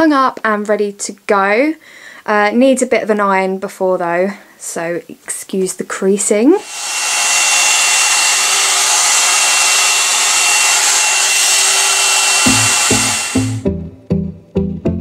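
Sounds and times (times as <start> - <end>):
hair dryer running: 6.6 - 13.7
music with plucked bass: 13.6 - 15.0.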